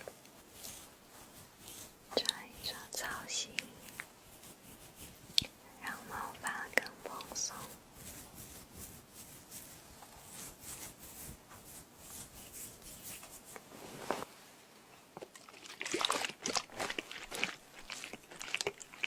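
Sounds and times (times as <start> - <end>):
hair being scrunched and rubbed: 0.0 - 14.3.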